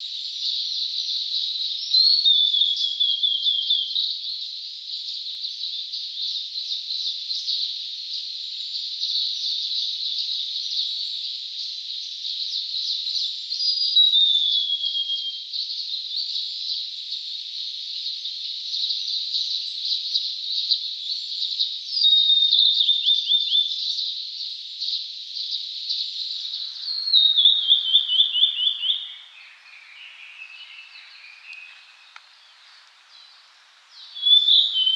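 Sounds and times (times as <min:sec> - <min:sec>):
flycatcher singing: 0:26.0 - 0:34.9.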